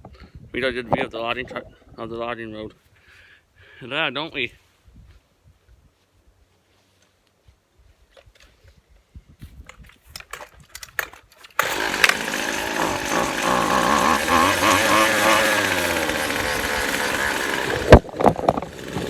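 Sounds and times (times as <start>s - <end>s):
string trimmer engine running: 11.6s - 19.0s.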